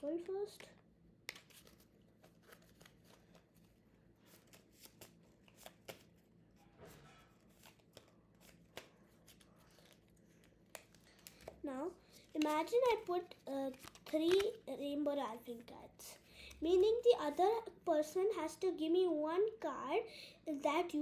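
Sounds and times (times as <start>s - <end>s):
playing cards shuffling: 1.3s - 6.2s, 7.2s - 14.7s.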